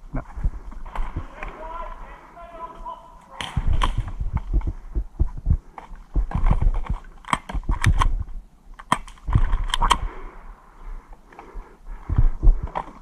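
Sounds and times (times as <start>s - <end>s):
footsteps: 0.4s - 7.1s
gear thudding against microphone: 3.4s - 8.3s.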